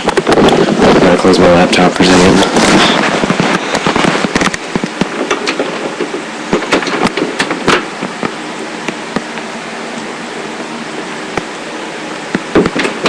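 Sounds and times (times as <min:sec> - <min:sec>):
steady hiss: 0:00.0 - 0:13.0
laptop handling knocks and clicks: 0:02.6 - 0:08.4, 0:12.3 - 0:13.0.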